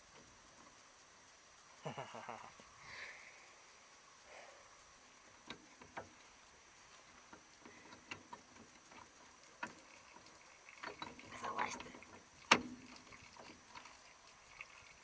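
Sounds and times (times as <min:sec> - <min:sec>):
faint clicks and light knocks: 0:05.2 - 0:15.0.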